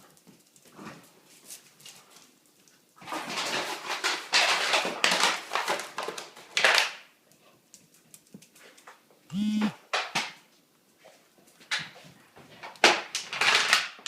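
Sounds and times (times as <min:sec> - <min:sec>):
puppy scuffling and rustling: 0:00.0 - 0:06.8.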